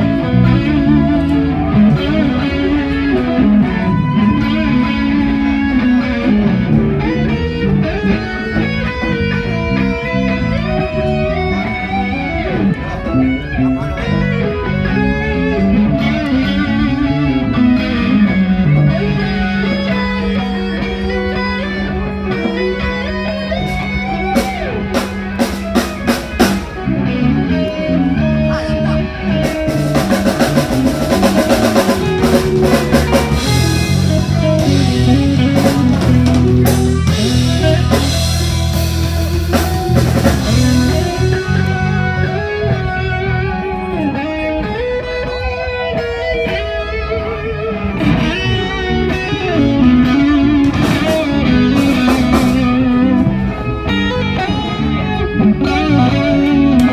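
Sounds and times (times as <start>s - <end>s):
live band playing: 0.0s - 56.9s
drum hits: 29.6s - 41.7s.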